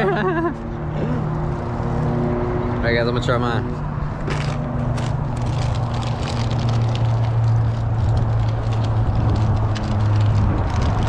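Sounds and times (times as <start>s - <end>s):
snack bag crackling: 4.3s - 11.0s.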